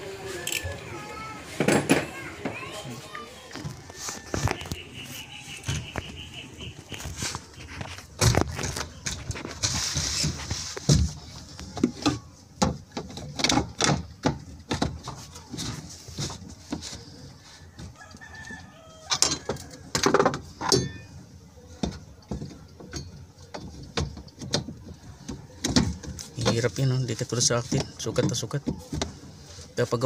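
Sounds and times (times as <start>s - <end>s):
rooster crowing: 17.9s - 19.8s.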